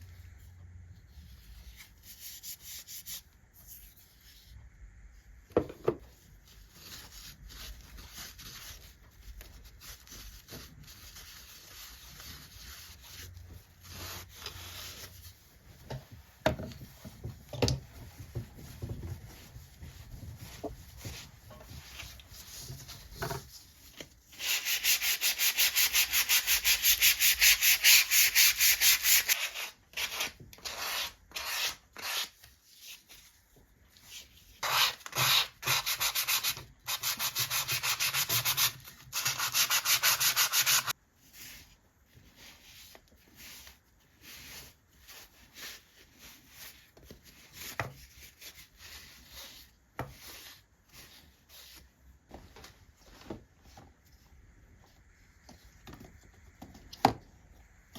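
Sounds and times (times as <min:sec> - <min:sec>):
soft handling sounds: 0:00.0 - 0:24.4, 0:40.9 - 0:57.9
sandpaper rubbing on wood: 0:24.4 - 0:32.3, 0:34.6 - 0:41.0.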